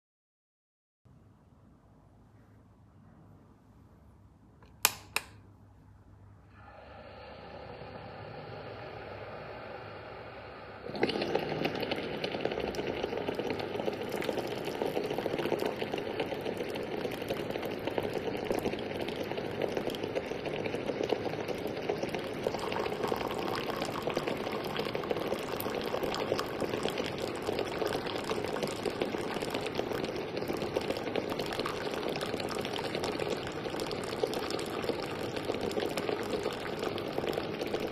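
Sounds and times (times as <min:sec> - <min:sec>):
clicks: 0:04.6 - 0:05.4
small pump humming: 0:06.5 - 0:37.9
hot water pouring: 0:06.6 - 0:37.9.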